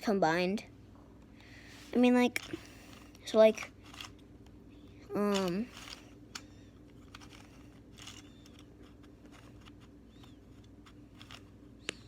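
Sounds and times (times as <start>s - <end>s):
puzzle cube clicking and rustling: 2.3s - 4.2s, 5.2s - 12.0s.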